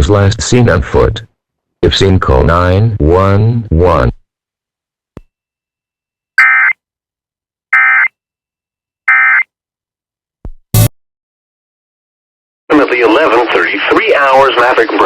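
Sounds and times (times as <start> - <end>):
emergency alert data tones: 6.4 - 6.8, 7.8 - 8.1, 9.1 - 9.4.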